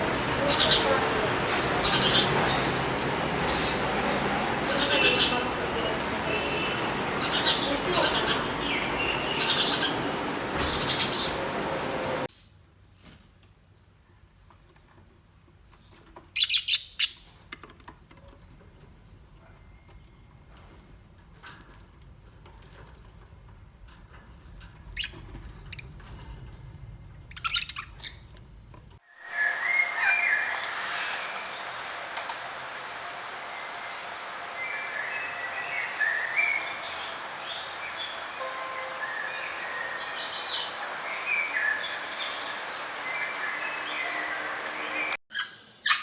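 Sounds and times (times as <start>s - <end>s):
chorus of many birds: 0.0s - 12.4s, 14.4s - 32.1s, 33.6s - 46.0s
small birds chirping: 0.0s - 12.6s, 13.5s - 29.0s.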